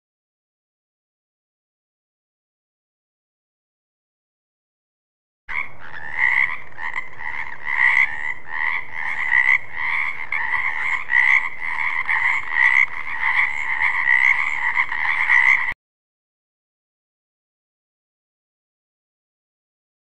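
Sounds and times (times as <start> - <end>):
frogs croaking in chorus: 5.5 - 15.8.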